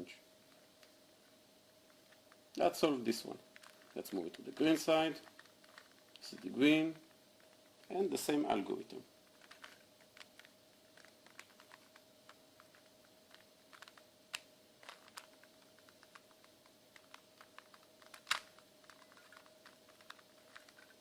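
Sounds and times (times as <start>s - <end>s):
faint steady hum: 0.0s - 21.0s
plastic puzzle cube clicking: 4.7s - 6.0s, 9.3s - 21.0s.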